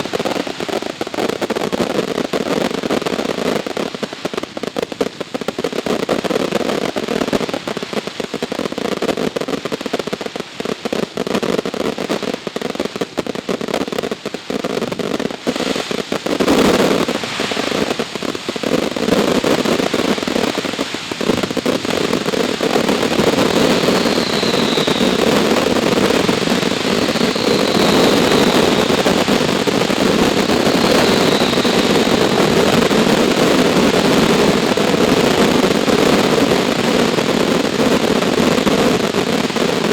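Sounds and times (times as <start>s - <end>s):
fireworks crackling barrage: 0.0s - 39.9s
loud firework bang: 22.8s - 34.6s.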